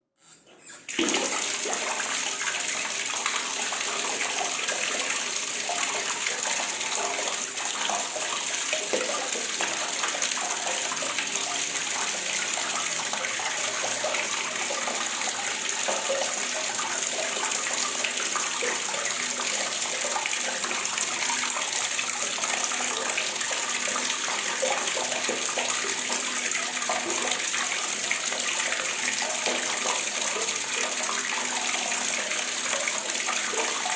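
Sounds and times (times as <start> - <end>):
water running from a faucet: 0.6 - 33.9.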